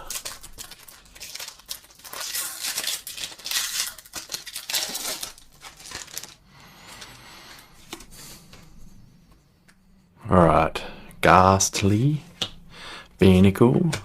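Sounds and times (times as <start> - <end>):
foil wrapper tearing and crinkling: 0.0 - 6.4.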